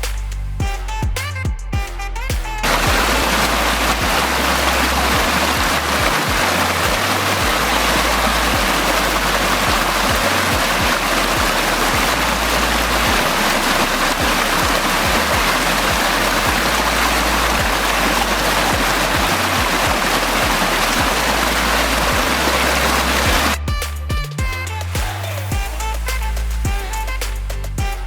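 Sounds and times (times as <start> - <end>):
bass-heavy music: 0.0 - 28.0
waterfall rushing: 2.6 - 23.6.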